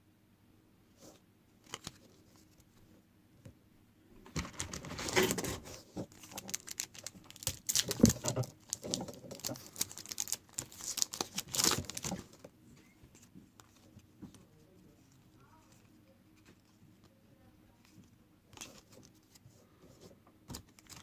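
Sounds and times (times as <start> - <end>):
card pack wrapper crinkling: 4.4 - 12.5, 20.5 - 21.0.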